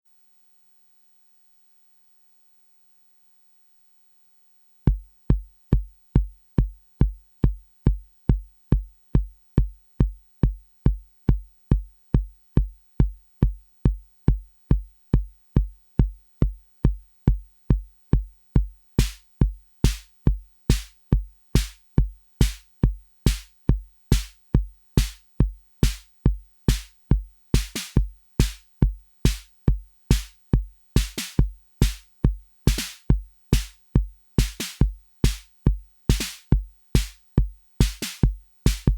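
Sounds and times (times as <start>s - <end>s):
drum machine bass drum: 4.9s - 38.9s
drum machine hi-hat hits: 17.3s - 21.0s, 21.6s - 38.9s.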